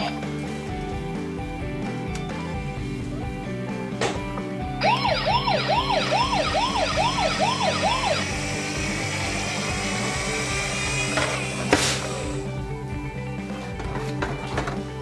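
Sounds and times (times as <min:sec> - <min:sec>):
toy siren wailing: 0:04.8 - 0:11.4.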